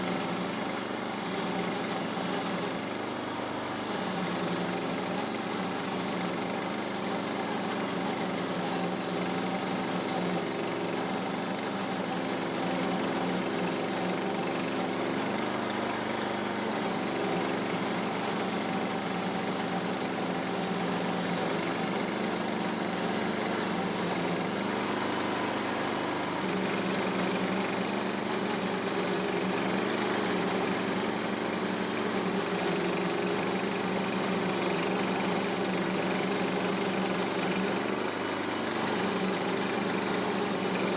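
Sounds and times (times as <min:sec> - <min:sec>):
small gasoline engine running: 0:00.0 - 0:40.9.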